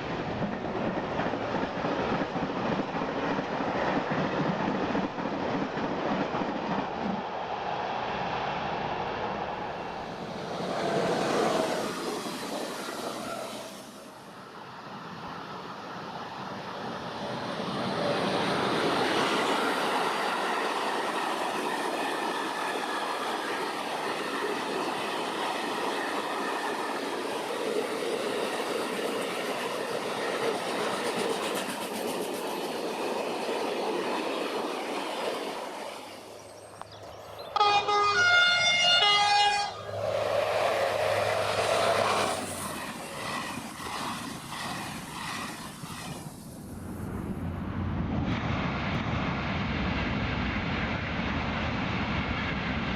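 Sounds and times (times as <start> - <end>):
train rolling past: 0.0 - 52.9
train horn blast: 37.6 - 42.3.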